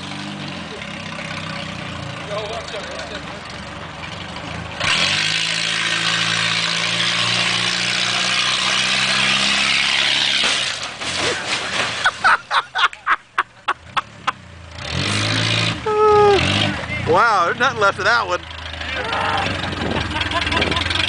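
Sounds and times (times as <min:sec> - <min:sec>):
sharp bangs and clatters: 0:09.4 - 0:12.3
car engine running: 0:15.8 - 0:21.0.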